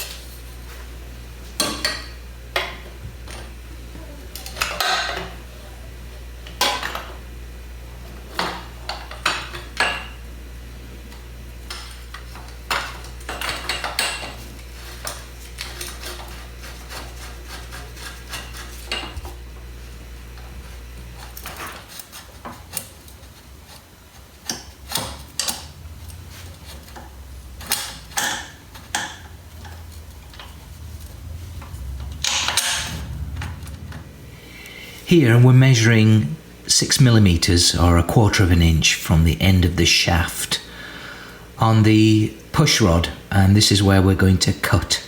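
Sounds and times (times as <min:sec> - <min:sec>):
steady low hum: 0:00.0 - 0:45.0
tools clinking and knocking: 0:32.0 - 0:33.9.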